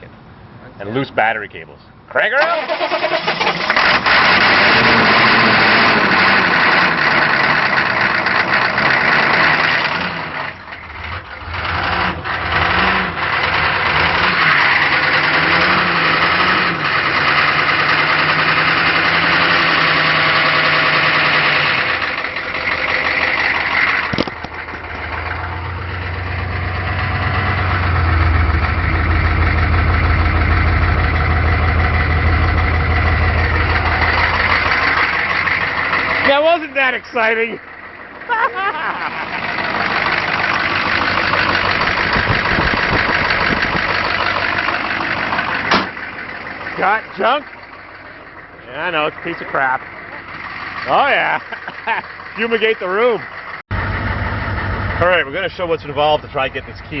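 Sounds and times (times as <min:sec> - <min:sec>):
diesel engine idling: 0:01.7 - 0:57.0
diesel engine cranking: 0:01.9 - 0:57.0.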